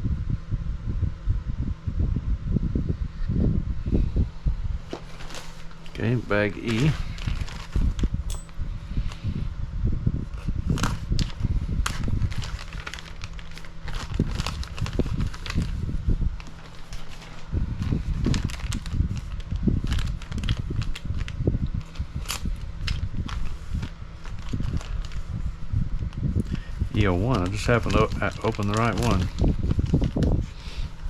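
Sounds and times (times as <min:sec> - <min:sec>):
plastic bags crinkling: 0:05.0 - 0:08.5, 0:10.8 - 0:15.8, 0:16.4 - 0:25.3, 0:27.0 - 0:30.4
handling thumps: 0:08.3 - 0:08.6.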